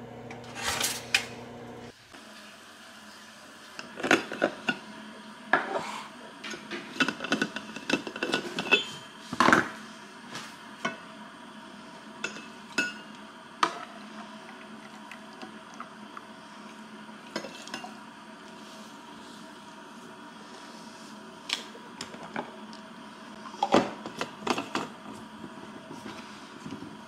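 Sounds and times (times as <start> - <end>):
dishes and utensils clinking: 6.4 - 9.6.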